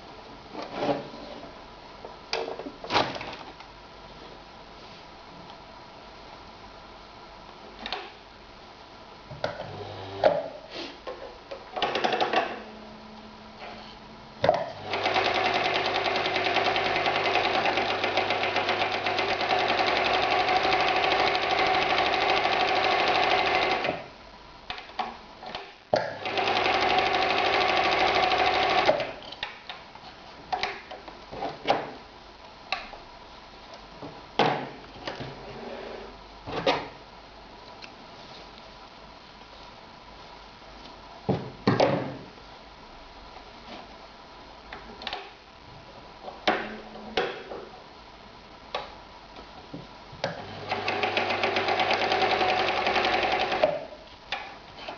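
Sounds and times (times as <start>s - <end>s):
sewing machine stitching leather: 14.7s - 24.1s, 25.5s - 29.2s, 50.3s - 54.0s.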